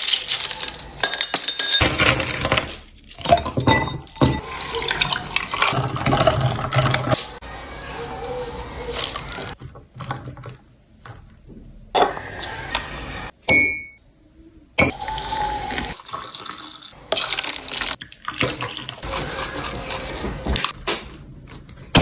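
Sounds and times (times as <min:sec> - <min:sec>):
glass and dish clinks: 0:01.0 - 0:01.9, 0:03.2 - 0:04.4, 0:13.5 - 0:14.0.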